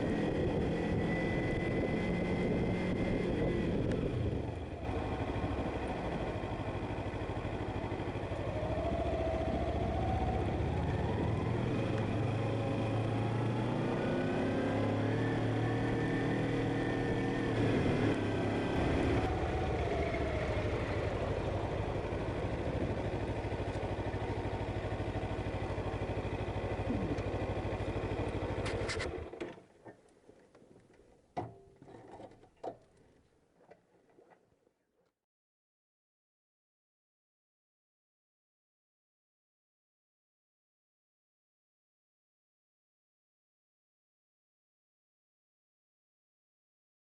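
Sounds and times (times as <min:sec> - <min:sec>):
wind noise: 0:00.0 - 0:04.9
motorcycle engine revving: 0:00.0 - 0:29.6.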